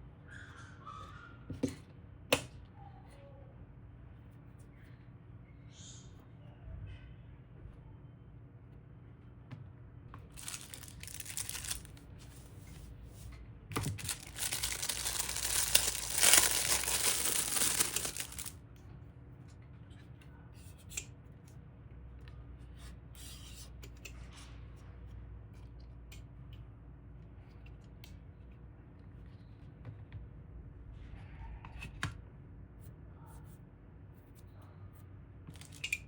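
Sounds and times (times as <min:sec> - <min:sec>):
plastic film crinkling and tearing: 0:10.4 - 0:12.1, 0:13.8 - 0:18.5.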